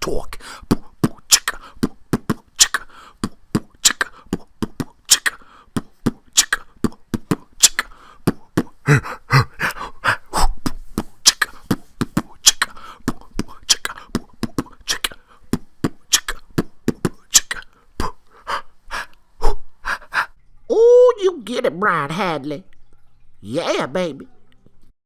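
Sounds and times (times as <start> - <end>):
beatboxing: 0.0 - 20.3.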